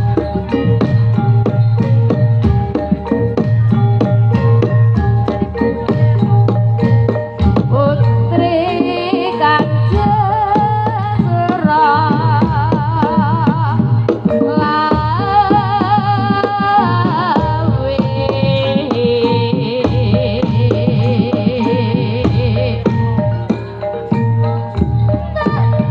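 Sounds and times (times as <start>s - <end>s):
gamelan music: 0.0s - 25.9s
melody with heavy vibrato: 0.0s - 25.9s.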